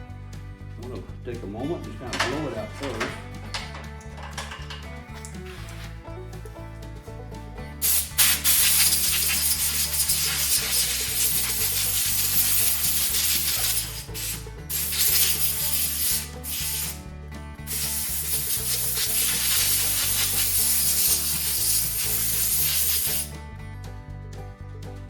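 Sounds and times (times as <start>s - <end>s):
compressed air hissing: 7.8s - 17.0s, 17.6s - 23.3s.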